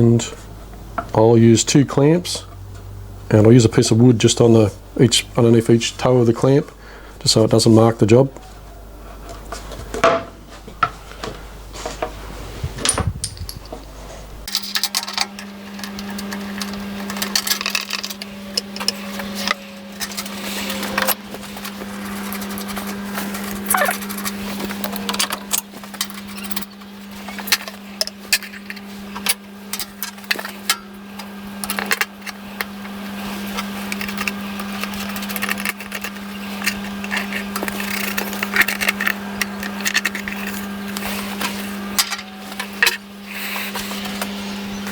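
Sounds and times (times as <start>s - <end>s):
low machine hum: 0.0s - 44.9s
metal tools clinking and knocking: 12.8s - 21.2s.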